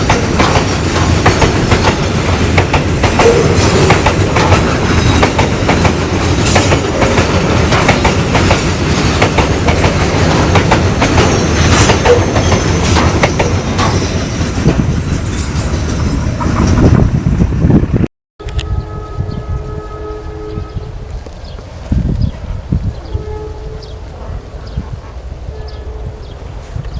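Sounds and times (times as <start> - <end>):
train wheels clacking over rail joints: 0.0 - 17.0
train wagons rumbling past: 0.0 - 26.9.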